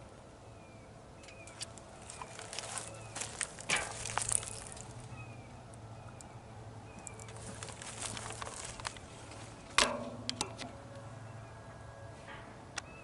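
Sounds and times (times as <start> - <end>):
clicks and rustles: 1.2 - 5.1, 7.0 - 10.8.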